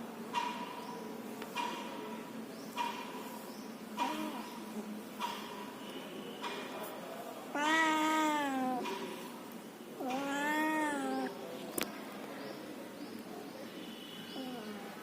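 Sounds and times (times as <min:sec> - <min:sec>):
cat meowing: 0:07.5 - 0:08.9, 0:10.0 - 0:11.3.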